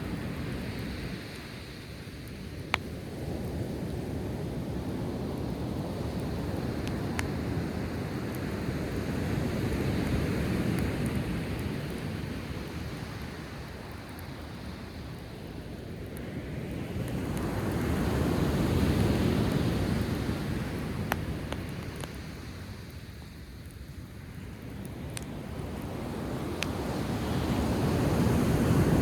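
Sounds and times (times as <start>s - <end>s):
campfire popping: 0.0s - 23.0s, 23.6s - 29.0s
waves washing onto shore: 0.0s - 29.0s.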